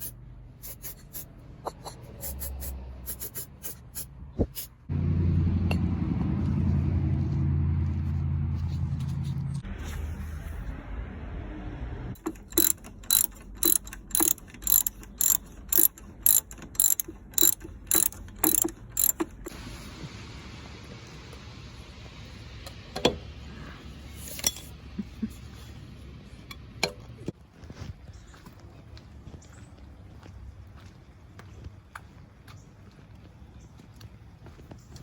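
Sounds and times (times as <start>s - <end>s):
metallic clicking: 12.2s - 19.5s.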